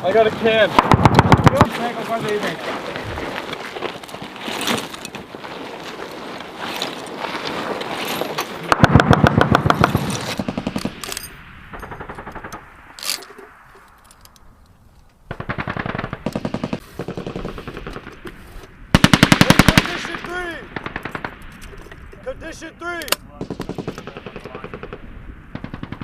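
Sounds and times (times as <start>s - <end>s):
machine-gun fire bursts: 0.8s - 1.7s, 8.7s - 11.0s, 15.3s - 18.1s, 18.9s - 21.4s, 23.4s - 26.0s.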